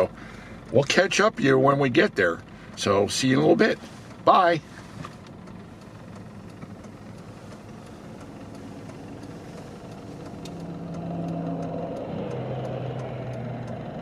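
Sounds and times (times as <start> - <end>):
car engine: 0.0 - 14.0
faint ticking: 0.0 - 14.0
road noise inside car: 0.0 - 14.0.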